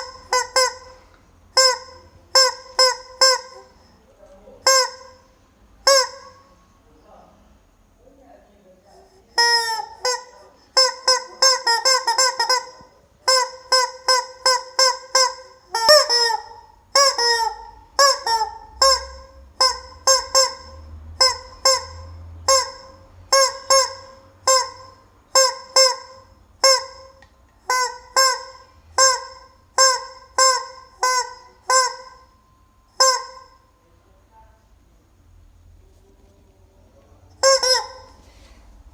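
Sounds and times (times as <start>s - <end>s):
rubber chicken toy squawking: 0.0s - 3.9s, 4.6s - 6.5s, 9.3s - 32.3s, 33.0s - 33.6s, 37.4s - 38.2s.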